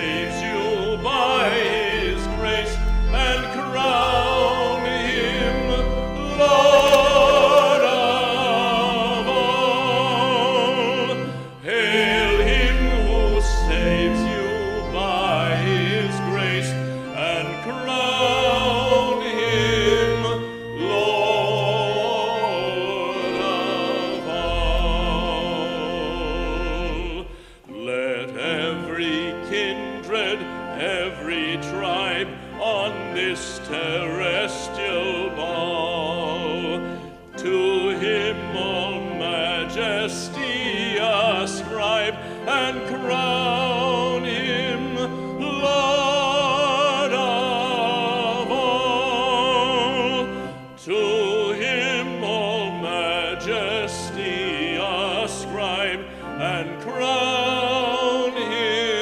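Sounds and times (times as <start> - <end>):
person singing with wide vibrato: 0.0 - 59.0
sustained classical accompaniment: 0.0 - 59.0.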